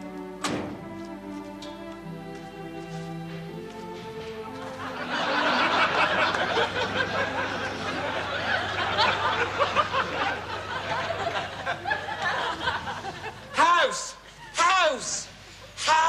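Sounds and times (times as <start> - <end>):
audience laughing: 4.4 - 13.6.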